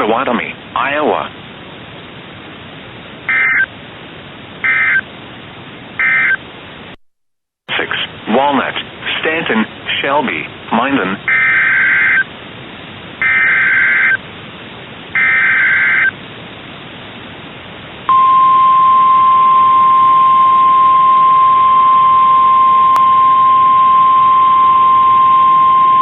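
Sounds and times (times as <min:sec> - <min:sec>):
raspy digital header bursts: 0:03.3 - 0:03.7
steady warning alarm tone: 0:03.3 - 0:03.7, 0:04.6 - 0:05.0, 0:06.0 - 0:06.4, 0:11.3 - 0:12.3, 0:13.2 - 0:14.2, 0:15.2 - 0:16.1, 0:18.1 - 0:26.0.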